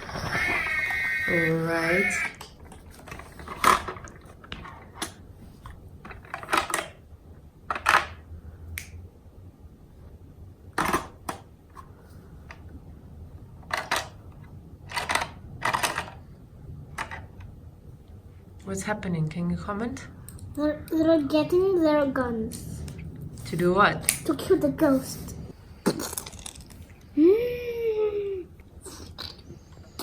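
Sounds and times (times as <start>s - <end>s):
plastic toy pieces scraping: 0.0s - 5.1s, 25.9s - 26.9s
plastic toy pieces clicking: 13.7s - 14.2s, 14.9s - 16.2s.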